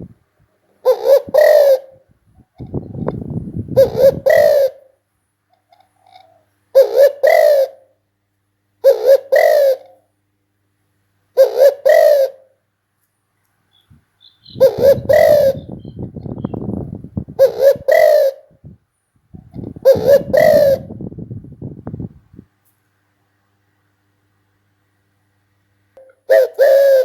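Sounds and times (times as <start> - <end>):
dove cooing: 0.8 - 5.0, 5.7 - 8.0, 8.8 - 10.1, 11.4 - 12.6, 14.4 - 18.8, 19.4 - 21.1, 26.0 - 27.0.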